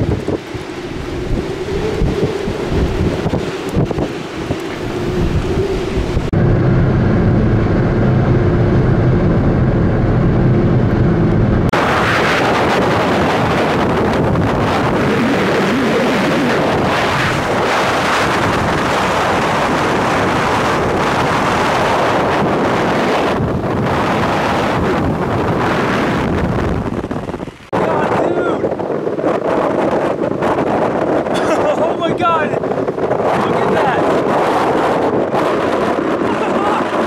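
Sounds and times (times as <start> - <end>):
wind gusting on microphone: 0.0 - 37.0
low vehicle-like rumble: 4.7 - 12.0.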